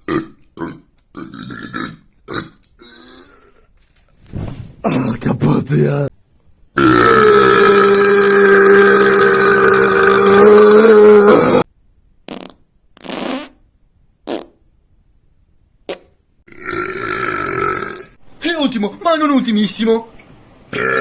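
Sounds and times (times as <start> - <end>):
fart: 12.2 - 13.6, 14.2 - 14.6, 15.9 - 18.1.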